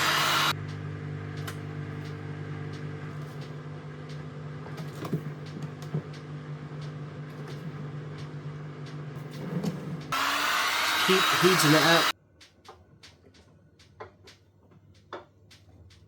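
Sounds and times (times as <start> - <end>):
heat gun air rushing: 0.0 - 0.6, 10.1 - 12.1.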